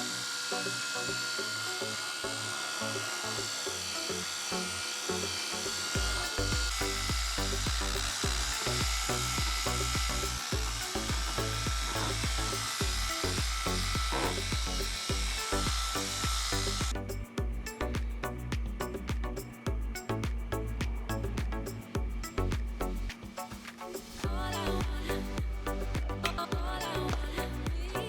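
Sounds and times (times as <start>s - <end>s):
synth music: 0.0s - 28.0s
heavy bass beat: 6.0s - 23.0s, 24.2s - 28.0s.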